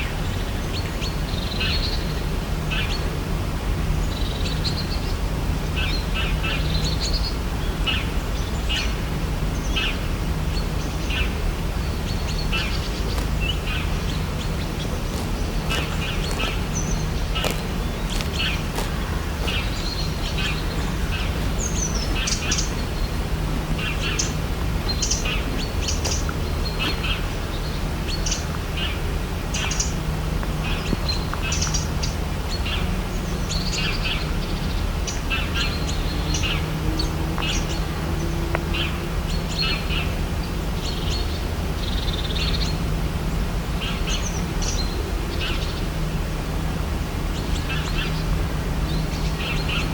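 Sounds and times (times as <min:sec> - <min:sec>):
birds chirping: 0:09.7 - 0:40.1
steady low rumble: 0:10.5 - 0:32.6.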